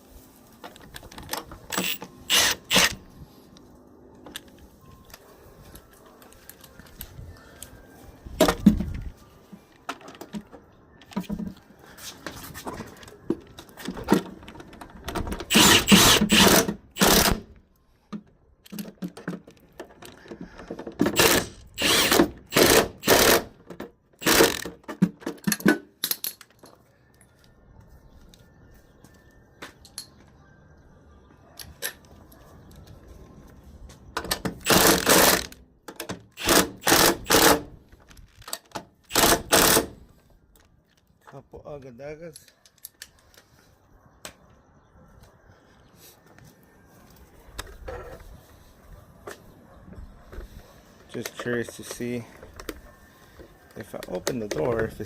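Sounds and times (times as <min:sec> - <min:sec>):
power tool bursts: 0:01.7 - 0:03.0, 0:15.5 - 0:17.4, 0:21.2 - 0:23.5, 0:24.2 - 0:24.7, 0:34.6 - 0:35.5, 0:36.4 - 0:37.7, 0:39.1 - 0:40.0.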